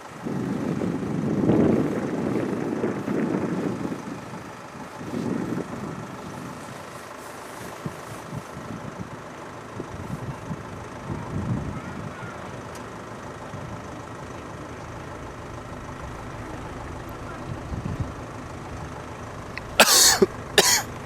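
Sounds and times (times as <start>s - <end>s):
diesel train engine idling: 0.0s - 21.0s.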